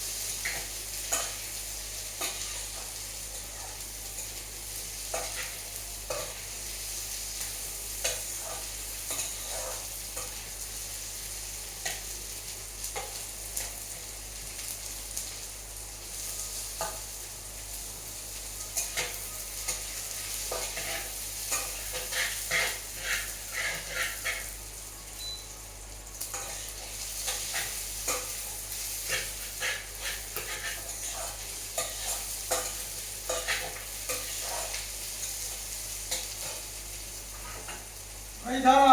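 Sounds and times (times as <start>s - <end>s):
food sizzling in oil: 0.0s - 38.9s
utensil scraping a pan: 20.5s - 24.6s, 29.0s - 34.8s.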